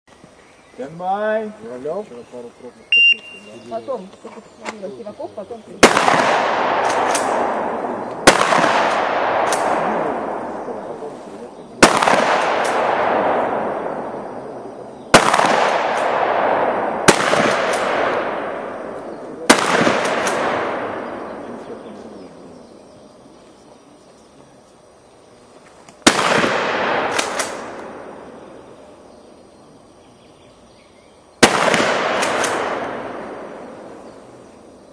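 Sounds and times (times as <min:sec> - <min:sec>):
shotgun blasts echoing: 0:05.8 - 0:11.1, 0:11.8 - 0:21.9, 0:26.0 - 0:29.0, 0:31.4 - 0:34.4.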